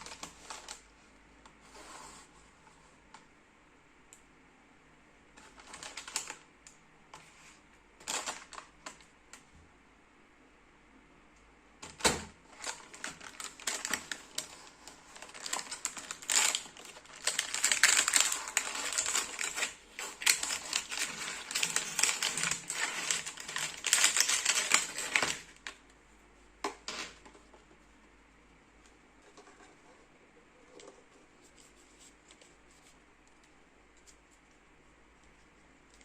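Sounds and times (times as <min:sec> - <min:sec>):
plastic clicking and crinkling: 0:05.4 - 0:07.3, 0:08.0 - 0:09.5, 0:11.8 - 0:26.0.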